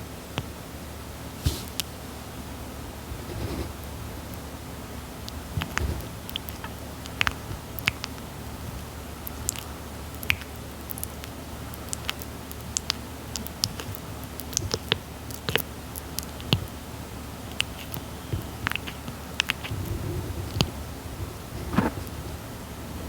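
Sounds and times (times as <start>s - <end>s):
steady low hum: 0.0s - 23.0s
tortoise chewing with wet clicks: 5.1s - 20.9s.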